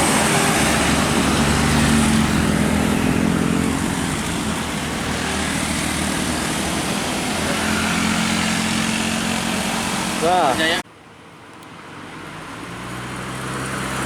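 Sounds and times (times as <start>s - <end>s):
bus engine running: 0.0s - 10.8s
road traffic: 0.0s - 14.0s.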